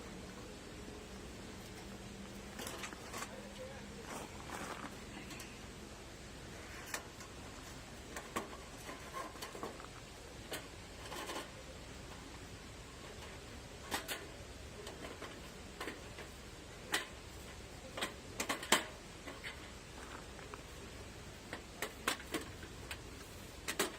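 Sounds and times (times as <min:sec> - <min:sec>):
metal parts clicking and knocking: 0:08.1 - 0:11.6, 0:13.0 - 0:20.7, 0:21.4 - 0:23.9.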